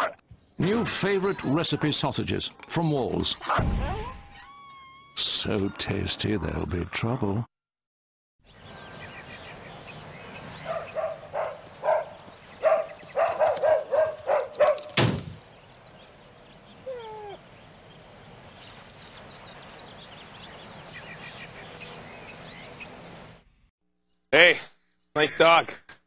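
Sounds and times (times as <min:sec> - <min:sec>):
dog barking: 0:10.6 - 0:15.0
hard thud: 0:14.9 - 0:15.4
dog whimpering: 0:16.8 - 0:17.4.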